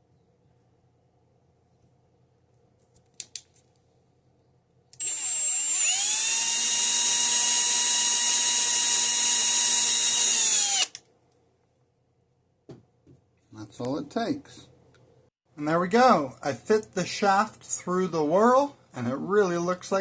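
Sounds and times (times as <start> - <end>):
cordless drill boring into wood: 5.0 - 11.0.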